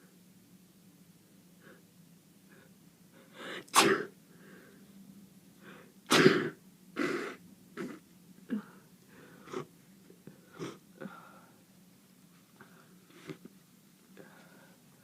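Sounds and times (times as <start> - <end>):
person sneezing: 3.6 - 4.1, 6.1 - 8.0.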